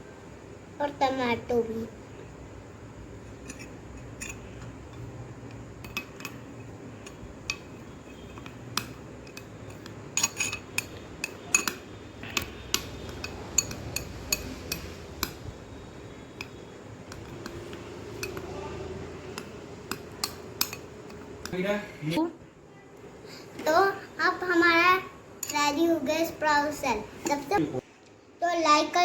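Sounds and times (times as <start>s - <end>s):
spoon clinking against bowl: 5.8s - 15.4s, 16.4s - 18.5s, 19.3s - 21.6s.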